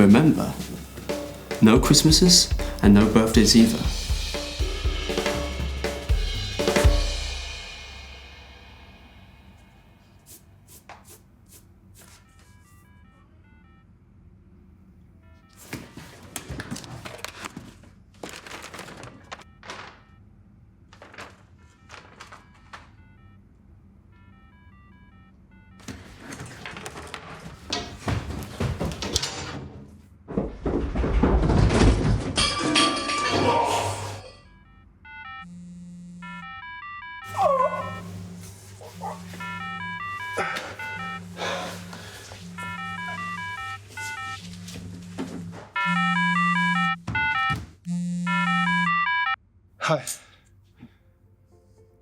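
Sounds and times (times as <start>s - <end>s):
phone ringtone: 12.3s - 13.9s, 22.4s - 26.0s, 33.9s - 49.4s
rustling: 37.3s - 45.8s.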